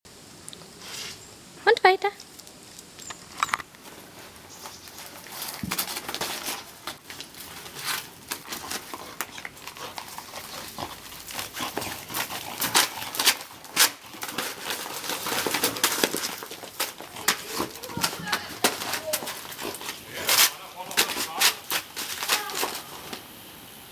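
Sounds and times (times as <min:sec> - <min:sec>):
dog tearing gift wrapping: 0:03.8 - 0:23.6.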